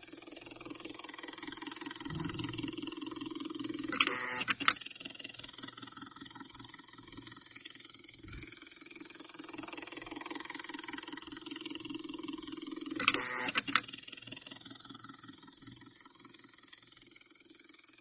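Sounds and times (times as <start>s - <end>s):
infusion pump humming: 1.8s - 3.2s
sharp clicks: 3.9s - 4.8s, 13.0s - 13.8s.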